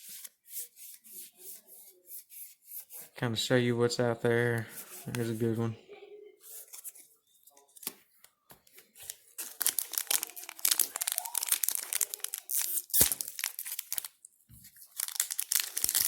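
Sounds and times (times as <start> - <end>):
card pack wrapper tearing and crinkling: 9.0 - 16.0.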